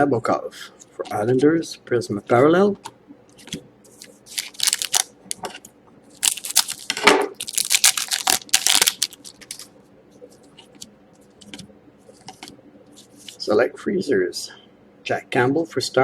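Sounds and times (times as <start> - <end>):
foil wrapper crinkling and tearing: 4.0 - 5.4, 6.2 - 9.7.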